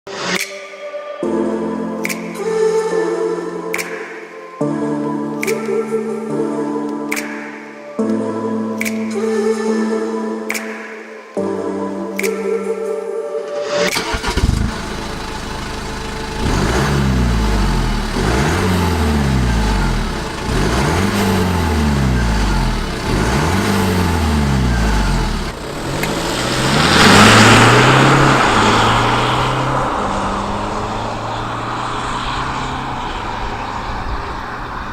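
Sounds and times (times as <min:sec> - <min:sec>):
diesel engine starting: 0:13.9 - 0:34.9
diesel engine revving: 0:14.0 - 0:34.9.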